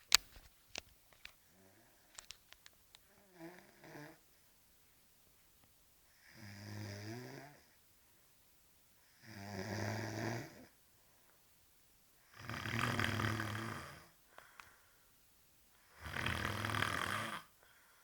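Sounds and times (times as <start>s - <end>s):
quiet breathing: 1.4s - 11.6s, 12.2s - 18.0s
man snoring heavily: 6.2s - 7.6s, 9.2s - 10.7s, 12.3s - 14.2s, 15.9s - 17.6s.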